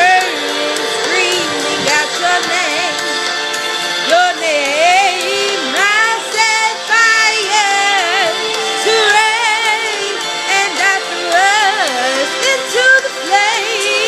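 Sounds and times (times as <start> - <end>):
person singing wavering vocal runs: 0.0 - 3.0
backing track: 0.0 - 14.0.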